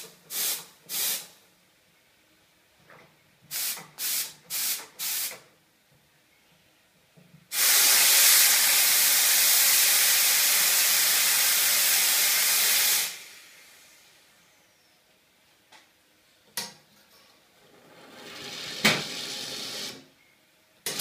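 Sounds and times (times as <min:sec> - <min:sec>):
espresso steam wand hissing: 0:07.5 - 0:13.7.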